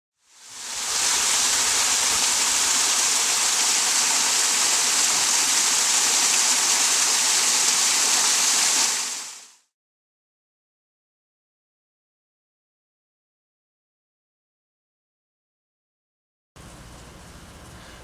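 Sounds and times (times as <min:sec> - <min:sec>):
steady rushing hiss: 0:00.2 - 0:09.5.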